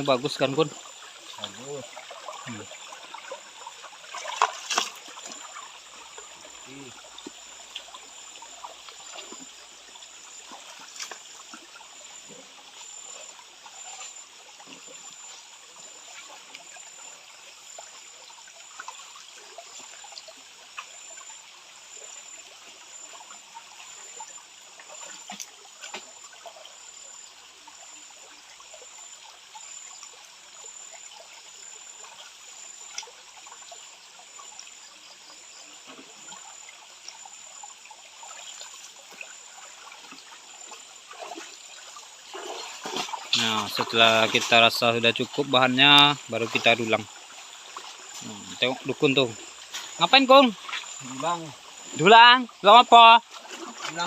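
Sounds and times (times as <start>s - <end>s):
faint high-pitched pulsing tone: 0.0s - 53.2s
stream water trickling: 0.0s - 54.0s
small splashes: 0.6s - 15.1s, 32.0s - 52.6s, 53.2s - 54.0s.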